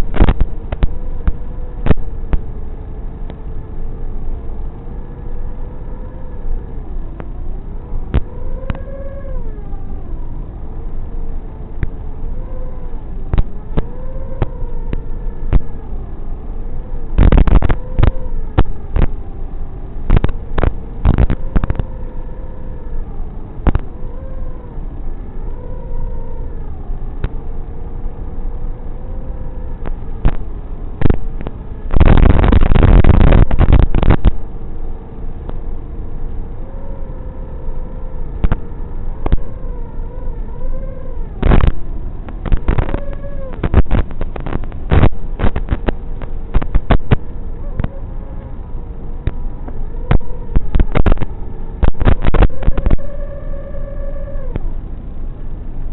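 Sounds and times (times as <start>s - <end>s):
drone motors whining: 0.0s - 55.9s.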